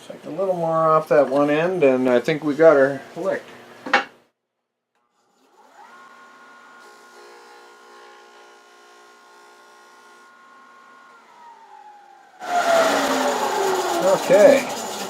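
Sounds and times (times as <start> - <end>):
disc sander motor whine: 5.5 - 15.0.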